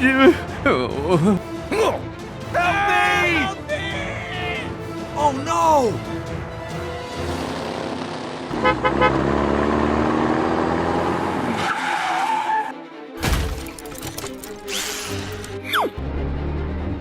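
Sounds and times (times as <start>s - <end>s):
background music: 0.0s - 17.0s.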